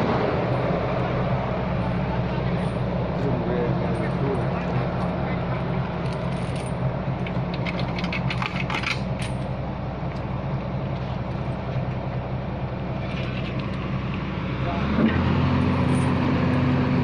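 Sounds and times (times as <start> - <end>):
heavy machine engine running: 0.0 - 17.0
metallic clinks: 6.0 - 6.8.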